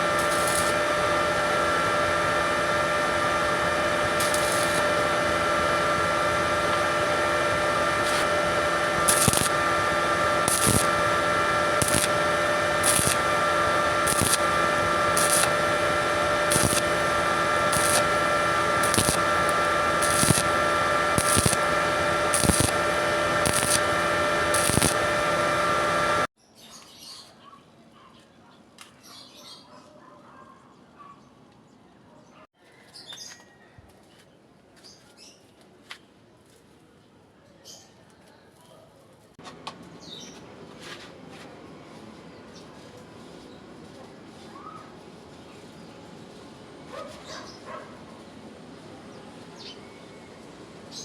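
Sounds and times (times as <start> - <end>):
machine running with tones: 0.0 - 26.3.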